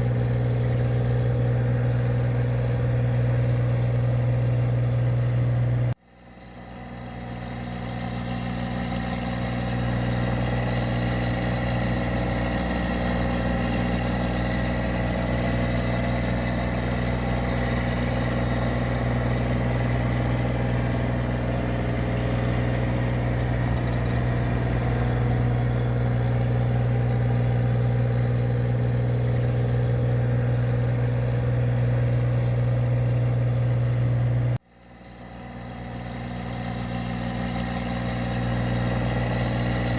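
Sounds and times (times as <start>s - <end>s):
machine engine humming: 8.8s - 34.6s.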